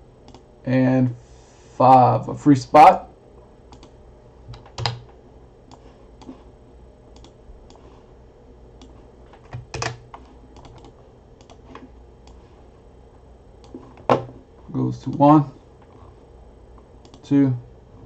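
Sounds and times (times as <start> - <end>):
computer keyboard clicks: 4.5 - 5.0, 7.2 - 7.4, 10.6 - 11.6.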